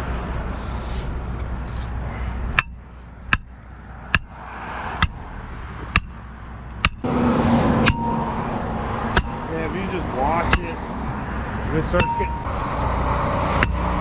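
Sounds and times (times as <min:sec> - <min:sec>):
sledgehammer striking metal post: 0:02.5 - 0:04.4, 0:05.0 - 0:10.8, 0:11.8 - 0:12.5, 0:13.5 - 0:14.0.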